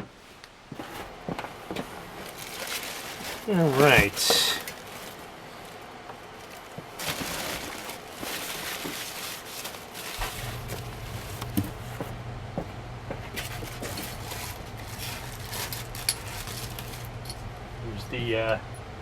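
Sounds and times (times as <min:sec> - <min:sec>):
rustling and scraping of parts: 0:00.0 - 0:17.5
steady low hum: 0:10.2 - 0:19.0.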